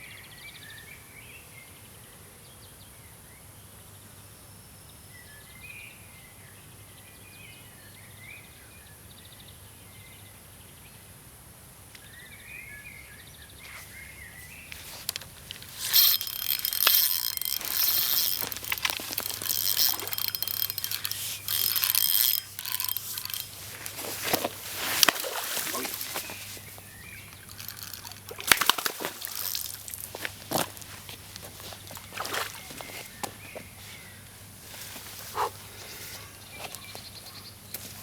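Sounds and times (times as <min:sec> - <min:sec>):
small birds chirping: 0:13.5 - 0:38.0
rustling: 0:14.8 - 0:36.8
water splashing: 0:15.6 - 0:33.4.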